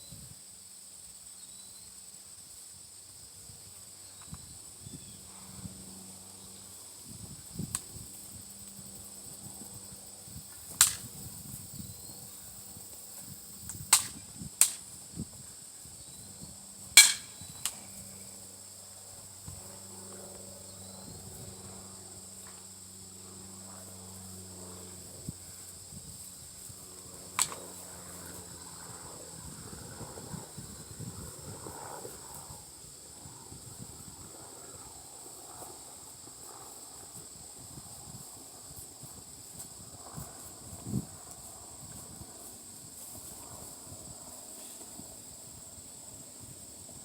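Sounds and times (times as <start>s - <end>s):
insects droning: 0.0s - 47.0s.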